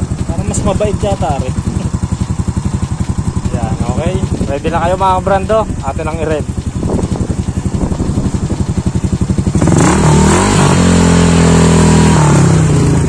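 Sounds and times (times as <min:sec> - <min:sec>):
motorcycle engine idling and revving: 0:00.0 - 0:13.0.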